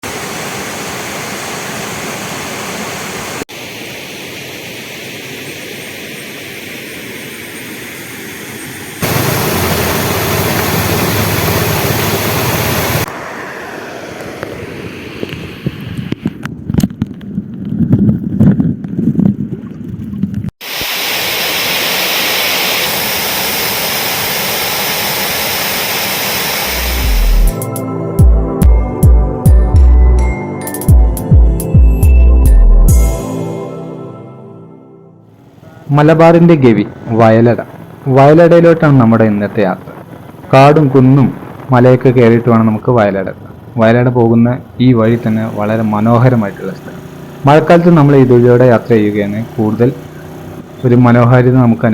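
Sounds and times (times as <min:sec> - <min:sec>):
waterfall rushing: 0:00.0 - 0:05.3, 0:09.0 - 0:14.2, 0:20.6 - 0:27.6, 0:45.1 - 0:46.1.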